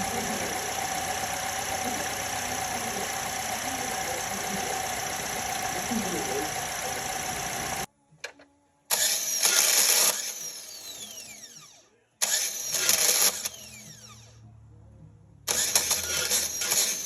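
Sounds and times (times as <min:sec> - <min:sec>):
car starter motor whirring: 0:00.0 - 0:07.9, 0:08.9 - 0:14.4, 0:15.5 - 0:17.0.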